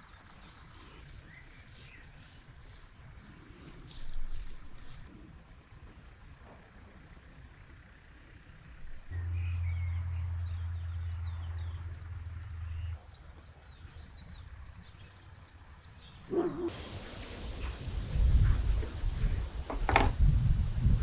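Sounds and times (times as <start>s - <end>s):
small birds chirping: 0.0s - 5.2s, 5.8s - 20.5s
steady low hum: 0.0s - 21.0s
brief bump: 19.7s - 20.3s.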